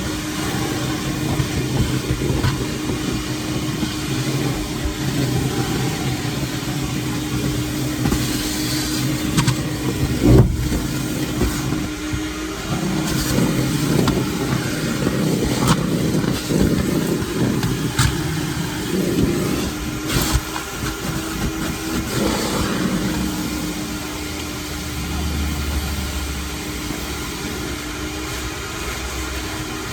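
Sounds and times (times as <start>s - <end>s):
vacuum cleaner running: 0.0s - 29.9s.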